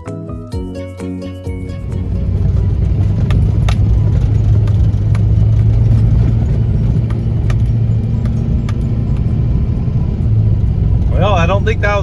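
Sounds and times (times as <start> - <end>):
vehicle engine droning: 0.6 - 12.0
sharp clicks and knocks: 1.7 - 11.0.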